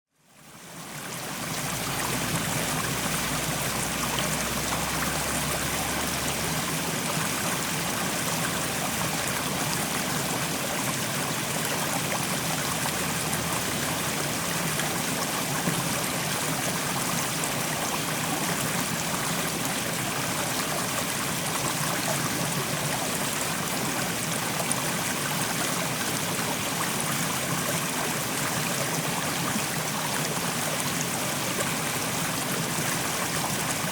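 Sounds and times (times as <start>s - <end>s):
stream rushing over rocks: 0.4s - 33.9s.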